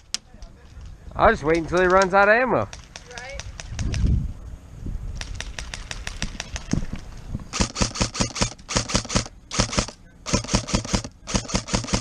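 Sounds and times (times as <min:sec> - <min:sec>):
airsoft gun clicks: 0:02.7 - 0:04.0
rapid airsoft gunfire: 0:07.5 - 0:12.0.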